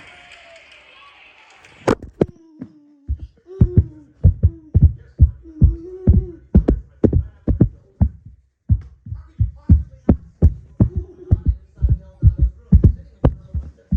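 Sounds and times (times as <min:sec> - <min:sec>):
hands clapping: 0:00.0 - 0:02.8
person humming low note: 0:02.3 - 0:08.2.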